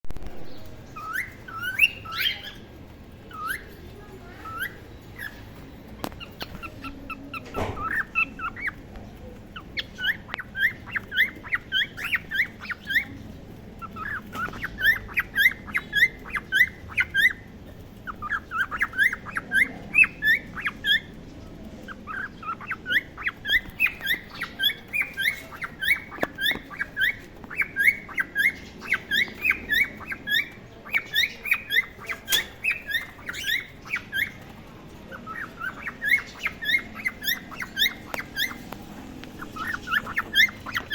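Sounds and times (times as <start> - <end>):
cockatiels chirping: 0.2 - 40.9.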